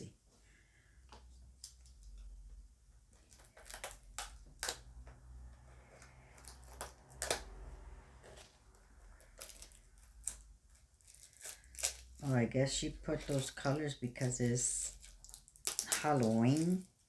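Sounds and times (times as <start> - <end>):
packaging clicks and rustles: 3.1 - 5.2, 5.8 - 12.3, 13.2 - 17.0.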